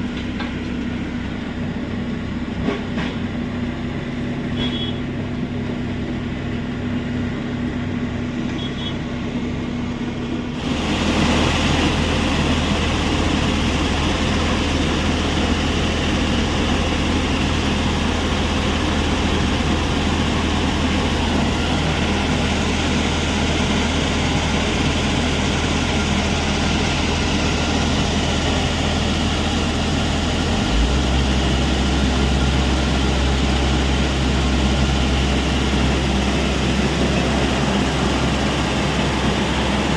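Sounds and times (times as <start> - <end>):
heavy diesel machinery drone: 0.0 - 39.9.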